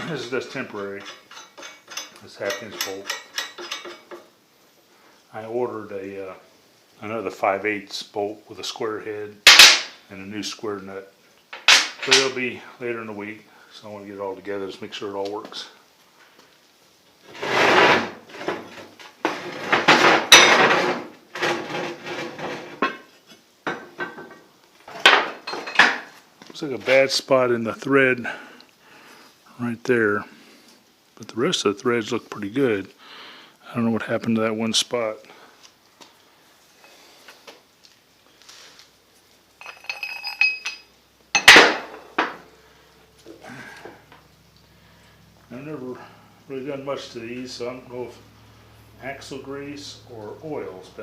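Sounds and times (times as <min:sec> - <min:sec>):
steel parts clanking and scraping: 0:00.0 - 0:04.3, 0:11.5 - 0:12.4, 0:17.3 - 0:23.1, 0:23.7 - 0:26.1, 0:39.6 - 0:42.5
loud metal clank: 0:19.6 - 0:21.7, 0:41.4 - 0:42.4
light metallic clinks ringing: 0:39.6 - 0:40.9.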